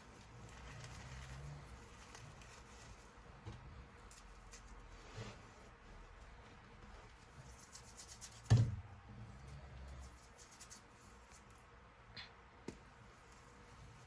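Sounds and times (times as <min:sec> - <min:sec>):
chalk crushed and rubbed by hand: 0:00.0 - 0:08.6, 0:09.5 - 0:11.6.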